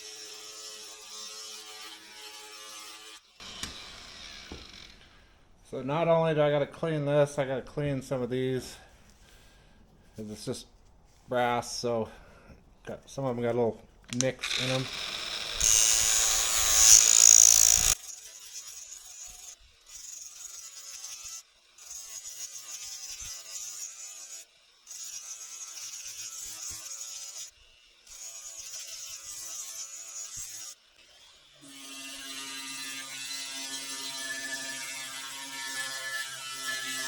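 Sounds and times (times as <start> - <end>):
small power tool running: 0.0 - 5.4, 14.4 - 37.0.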